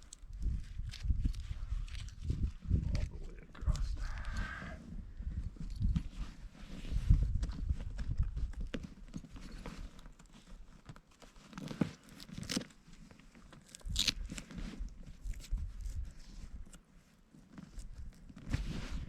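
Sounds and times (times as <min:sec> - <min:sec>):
velcro ripping: 0:11.5 - 0:12.8, 0:13.5 - 0:14.5
tent fabric rustling: 0:16.1 - 0:19.0.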